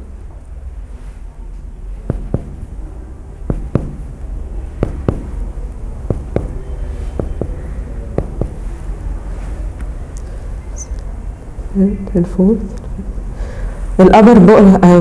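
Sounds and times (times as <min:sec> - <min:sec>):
finger tapping on chest: 0:02.1 - 0:02.7, 0:03.5 - 0:04.1, 0:04.8 - 0:05.4, 0:06.1 - 0:06.6, 0:07.2 - 0:07.6, 0:08.2 - 0:08.6.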